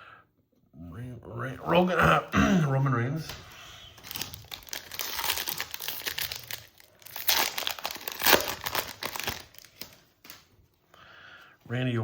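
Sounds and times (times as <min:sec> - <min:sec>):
foil wrapper crinkling and tearing: 0:04.0 - 0:10.5.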